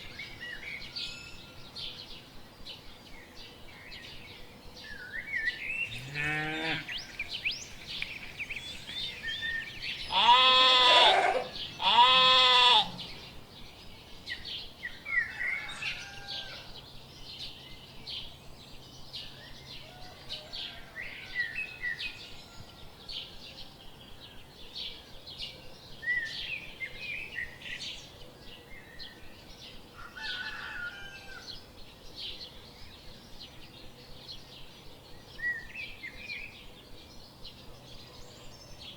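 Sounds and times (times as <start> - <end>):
small birds chirping: 0.0 - 15.7
livestock bleating: 5.9 - 6.9, 10.0 - 13.1.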